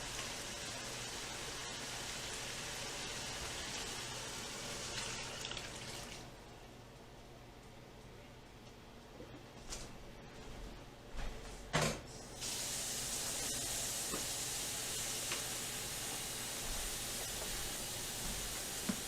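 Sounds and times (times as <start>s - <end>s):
hot oil sizzling: 0.0s - 6.3s, 12.4s - 19.0s.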